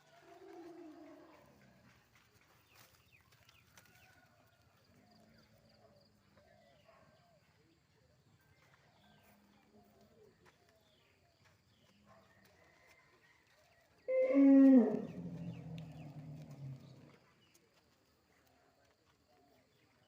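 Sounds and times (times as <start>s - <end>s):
deep lowing animal call: 14.1s - 17.2s.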